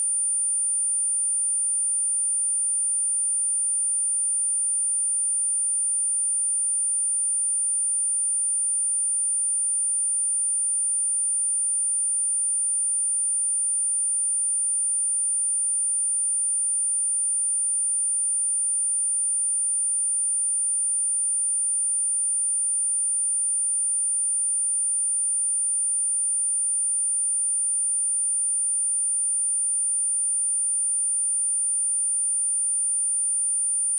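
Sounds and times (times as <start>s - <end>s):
high-pitched sine test tone: 26.2s - 33.9s.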